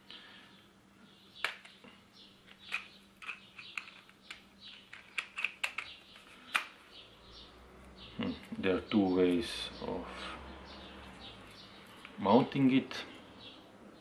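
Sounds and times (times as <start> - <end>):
sharp plastic clicks: 2.5 - 6.8.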